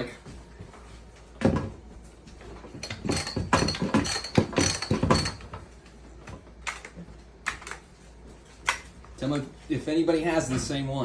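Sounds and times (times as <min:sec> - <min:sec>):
chainsaw parts clicking and rattling: 0:02.8 - 0:05.6.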